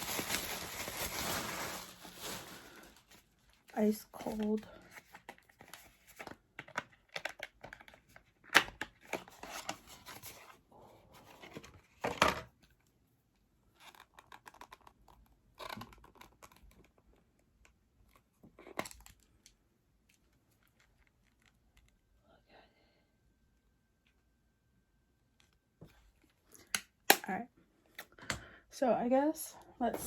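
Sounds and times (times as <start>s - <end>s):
packaging tearing and crinkling: 0.0s - 3.3s.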